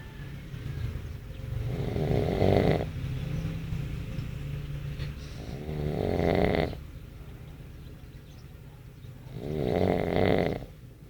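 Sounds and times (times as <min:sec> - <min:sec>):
person snoring: 0:01.6 - 0:02.9, 0:05.4 - 0:06.8, 0:09.3 - 0:10.7.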